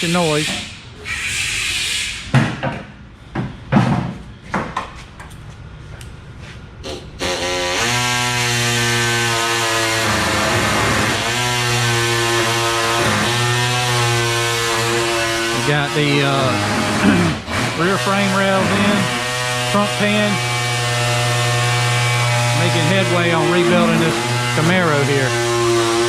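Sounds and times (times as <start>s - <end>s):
power tool whining: 6.9s - 26.0s.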